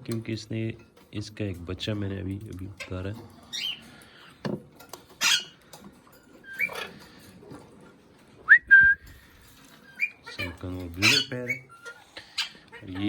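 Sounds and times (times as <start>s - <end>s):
parrot screeching and squawking: 2.8s - 4.3s, 5.1s - 5.7s, 6.4s - 7.3s, 9.5s - 13.0s.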